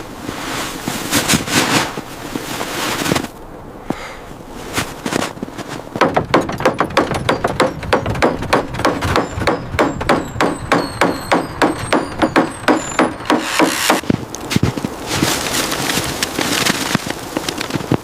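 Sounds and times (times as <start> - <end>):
fast footsteps crunching snow: 0.0 - 3.4, 4.4 - 6.0, 12.8 - 18.0.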